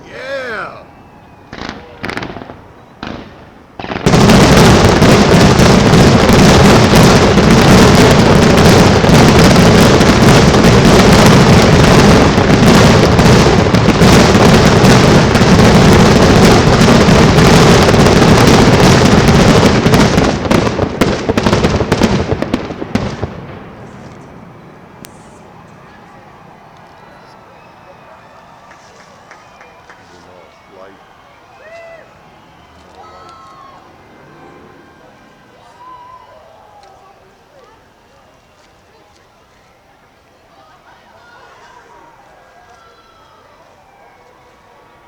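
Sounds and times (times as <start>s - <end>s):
fireworks bangs and crackles: 1.3s - 30.5s.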